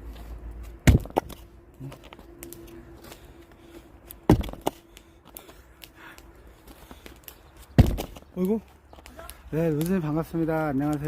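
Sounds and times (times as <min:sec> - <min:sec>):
axe striking firewood: 0:00.8 - 0:01.4, 0:04.3 - 0:04.8, 0:07.8 - 0:08.2.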